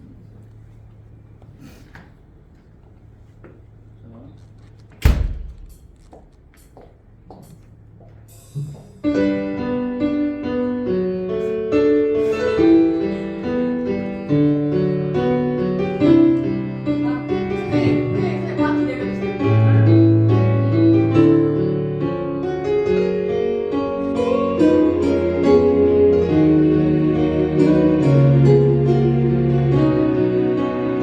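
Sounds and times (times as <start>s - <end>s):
slow piano ballad: 8.3s - 31.0s.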